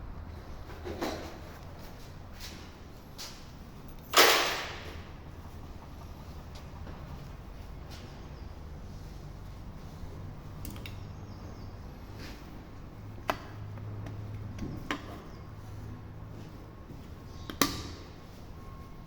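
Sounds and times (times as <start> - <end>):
sharp clicks: 10.6 - 11.0.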